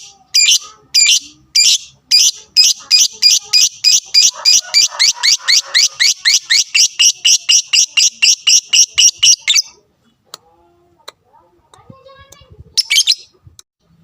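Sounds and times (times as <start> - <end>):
lovebird chirping: 0.0 - 9.8, 12.8 - 13.4.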